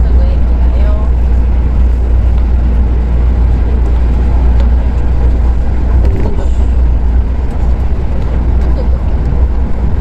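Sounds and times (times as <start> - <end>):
monorail train low rumble: 0.0 - 10.0.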